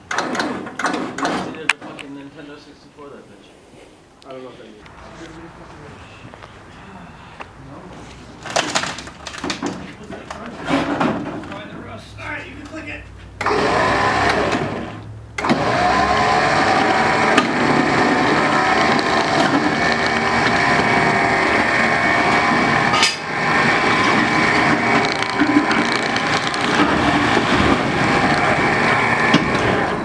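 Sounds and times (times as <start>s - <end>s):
electric winch motor running: 13.4s - 30.0s.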